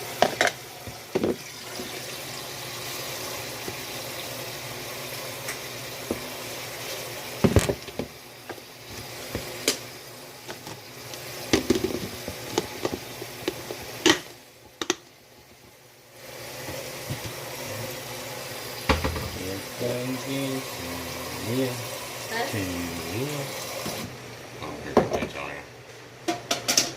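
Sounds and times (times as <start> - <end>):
water running from tap: 0.0 - 24.2
dishes clattering: 18.9 - 19.4, 26.3 - 26.9.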